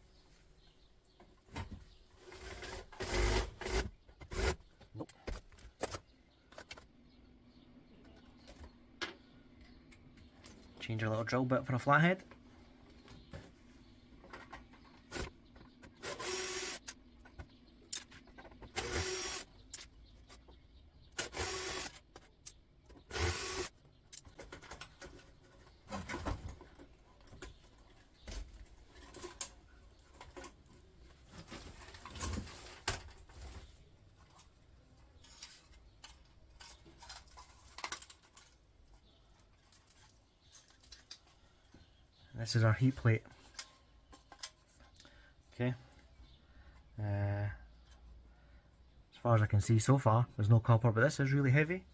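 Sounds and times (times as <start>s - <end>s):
cordless drill whirring: 16.0s - 16.8s, 18.8s - 19.5s, 21.2s - 22.0s, 23.1s - 23.7s.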